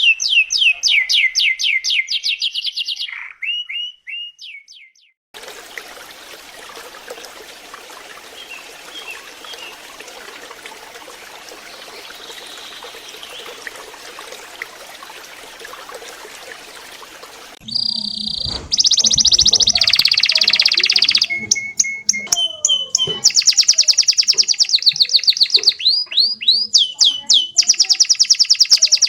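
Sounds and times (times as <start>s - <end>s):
canary trilling: 17.6s - 29.0s
faint bird chirps: 17.6s - 29.0s.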